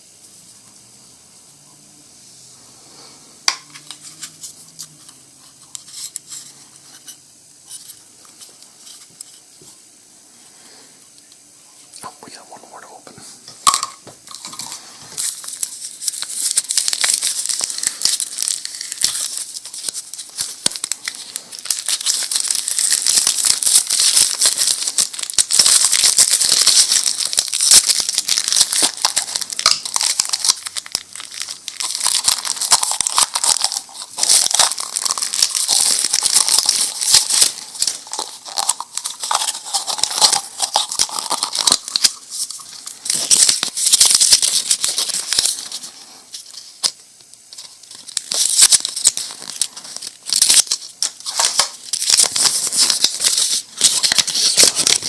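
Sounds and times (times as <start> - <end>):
candy packaging crinkling and tearing: 13.7 - 55.0.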